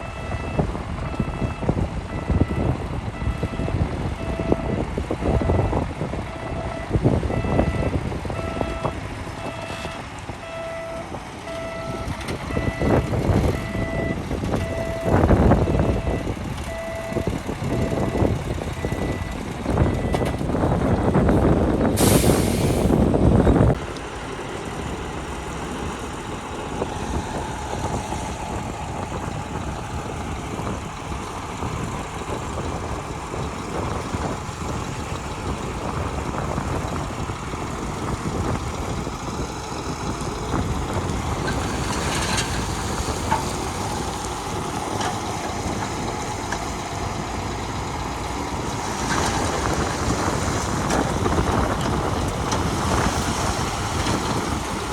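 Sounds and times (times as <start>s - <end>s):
diesel machinery engine drone: 0.0s - 54.9s
air hiss: 22.0s - 23.0s.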